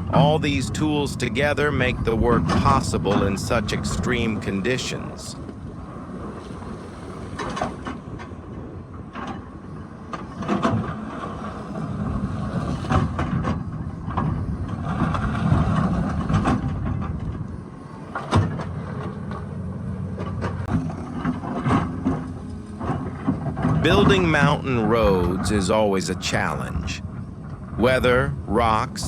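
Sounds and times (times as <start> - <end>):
excavator engine running: 21.8 - 29.0.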